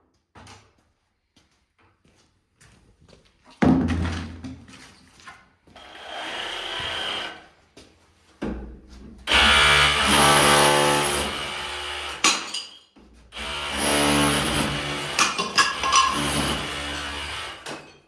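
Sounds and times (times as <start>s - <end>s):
electric power tool running: 9.3s - 12.2s, 13.4s - 17.7s.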